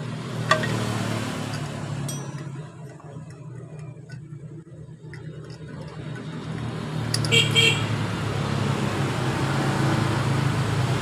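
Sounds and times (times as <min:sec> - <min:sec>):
engine humming: 0:00.0 - 0:11.0
hand tools clicking on metal: 0:00.5 - 0:00.8, 0:01.4 - 0:07.3.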